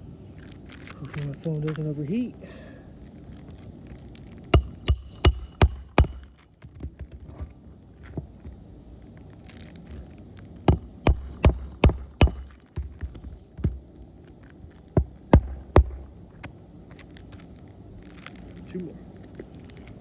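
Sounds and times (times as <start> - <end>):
hammer blows on nails: 4.6 - 6.4, 10.7 - 13.8, 15.0 - 16.5
light hammer taps: 10.7 - 13.8.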